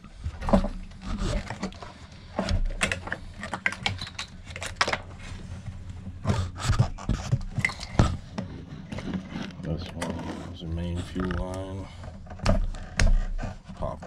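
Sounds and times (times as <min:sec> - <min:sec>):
plastic fittings clicking and rattling: 0:02.4 - 0:05.1.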